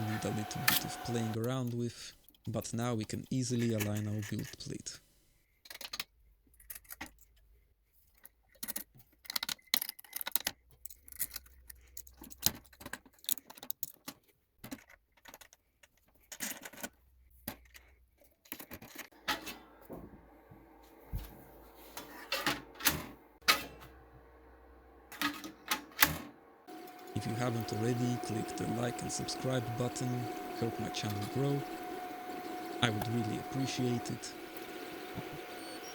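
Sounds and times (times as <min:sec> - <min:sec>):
mechanical hum with held tone: 0:00.0 - 0:02.0, 0:19.1 - 0:35.9
printer parts clicking and rattling: 0:02.3 - 0:04.8, 0:05.6 - 0:19.1.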